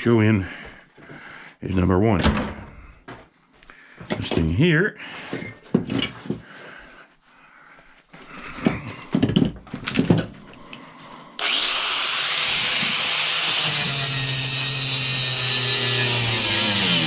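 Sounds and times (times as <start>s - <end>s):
power tool whining: 11.4s - 17.0s.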